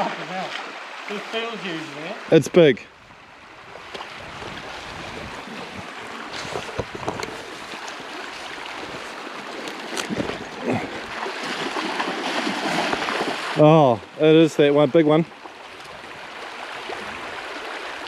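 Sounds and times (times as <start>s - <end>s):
river water rushing: 0.0s - 18.0s
short knocks and splashes: 3.8s - 13.6s.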